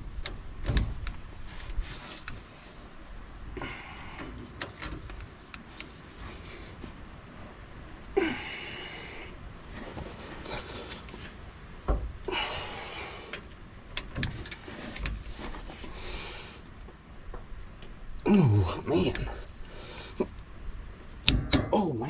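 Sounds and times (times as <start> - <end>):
man breathing heavily: 3.6 - 4.6, 8.1 - 11.4, 12.2 - 13.5, 15.8 - 16.7, 18.3 - 20.3
man grunting: 18.2 - 19.4.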